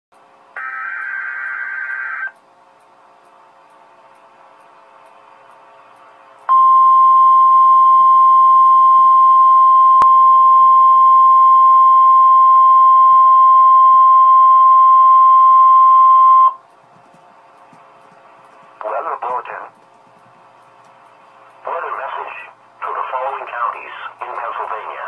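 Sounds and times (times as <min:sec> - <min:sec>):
loud high alert beep: 0:00.6 - 0:02.3
faint radio hiss: 0:18.7 - 0:20.3, 0:21.1 - 0:25.0.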